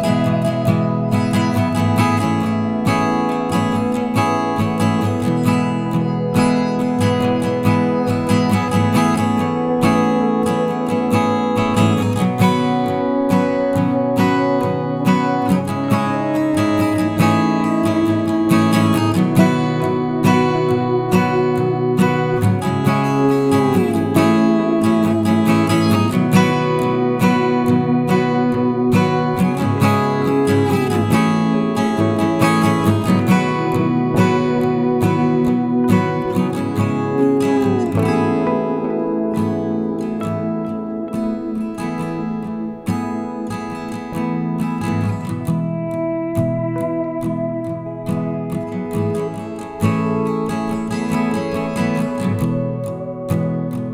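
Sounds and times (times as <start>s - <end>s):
strummed acoustic guitar: 0.0s - 53.9s.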